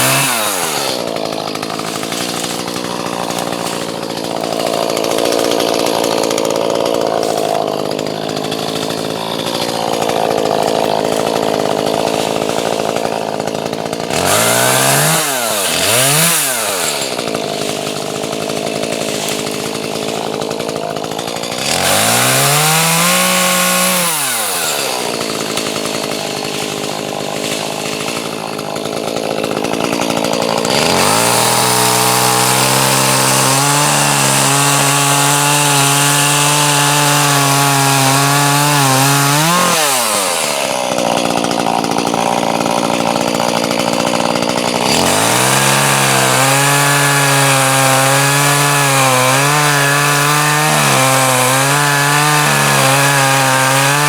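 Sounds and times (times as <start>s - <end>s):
chainsaw cutting through log: 0.0s - 54.0s.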